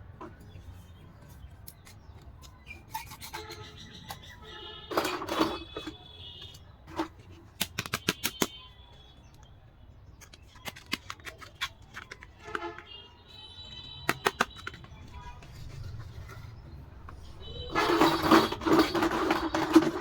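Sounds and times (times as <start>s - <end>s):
plastic toy pieces clicking: 7.5s - 8.6s, 10.2s - 12.6s, 14.0s - 15.1s.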